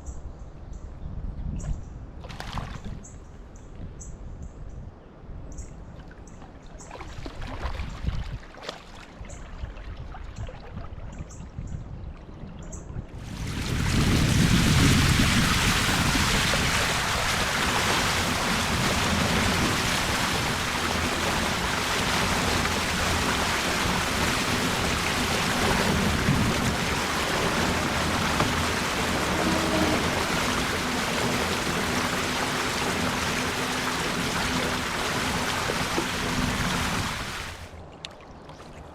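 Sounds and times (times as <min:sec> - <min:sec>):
river water rushing: 0:13.2 - 0:37.8.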